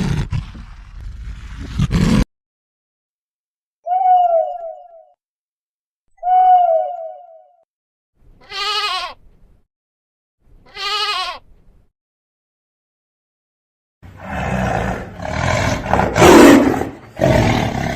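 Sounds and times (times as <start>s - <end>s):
sheep bleating: 8.4s - 9.2s, 10.7s - 11.4s.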